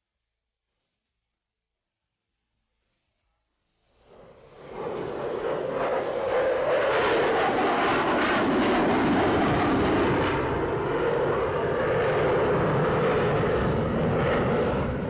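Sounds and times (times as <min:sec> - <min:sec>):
loud jet roar: 0:04.1 - 0:15.0.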